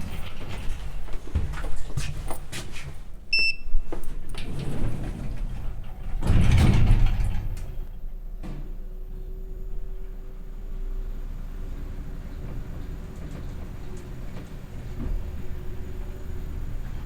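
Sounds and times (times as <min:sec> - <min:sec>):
elevator low hum: 0:00.0 - 0:17.0
short electronic beep: 0:03.3 - 0:03.8
elevator doors sliding shut: 0:03.4 - 0:09.1.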